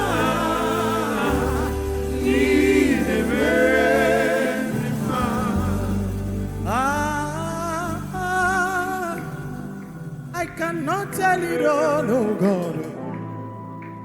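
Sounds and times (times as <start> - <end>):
people singing wavering vocals: 0.0 - 9.4
gospel band playing: 0.0 - 14.0.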